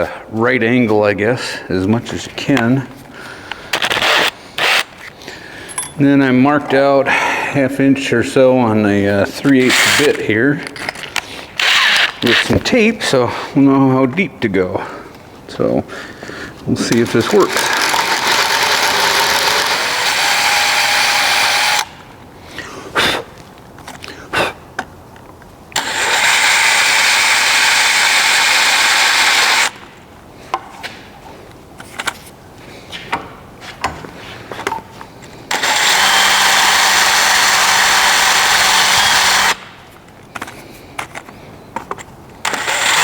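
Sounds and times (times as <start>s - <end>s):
power drill whining: 3.7s - 4.9s, 11.6s - 12.4s, 17.3s - 22.0s, 25.8s - 29.8s, 35.5s - 39.6s, 42.4s - 43.0s.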